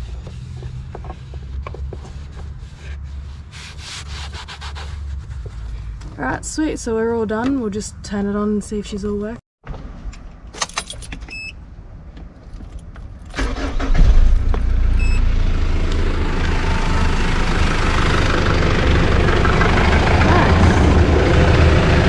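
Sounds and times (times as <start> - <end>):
car engine cranking and starting: 12.6 - 22.0
car engine idling: 13.4 - 22.0.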